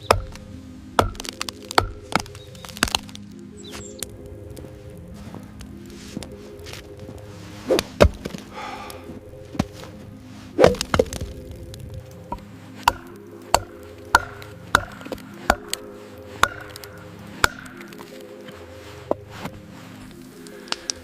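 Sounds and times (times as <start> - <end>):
soft background music: 0.0 - 21.0
sharp chopping strikes: 0.1 - 3.1, 7.7 - 8.3, 10.6 - 11.1, 12.3 - 15.8, 16.4 - 18.0.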